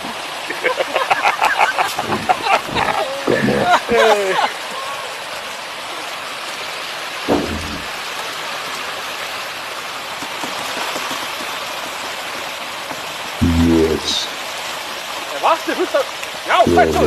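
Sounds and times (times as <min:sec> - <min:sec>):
heavy rain hissing: 0:00.0 - 0:10.0, 0:12.7 - 0:17.0
low shout: 0:02.2 - 0:05.1, 0:16.5 - 0:17.0.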